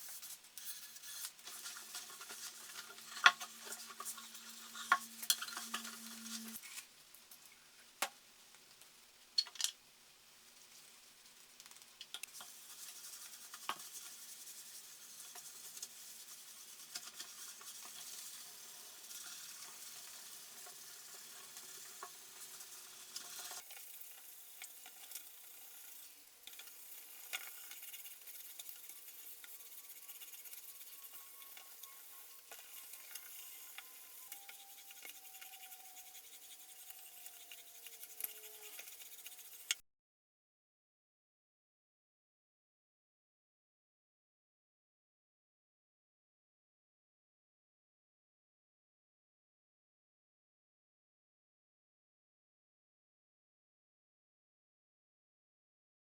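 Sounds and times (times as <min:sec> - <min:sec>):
cloth rubbing hiss: 0:00.0 - 0:07.0, 0:12.3 - 0:39.7.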